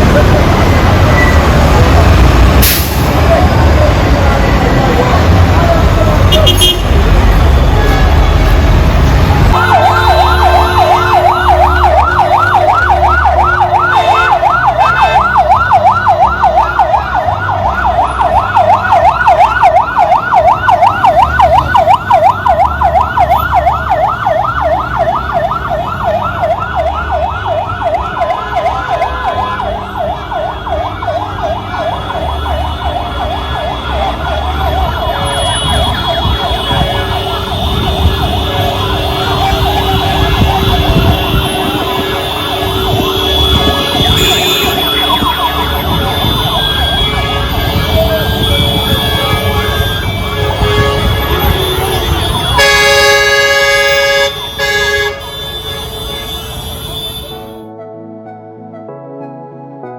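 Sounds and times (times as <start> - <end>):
siren yelping: 9.5 - 49.3.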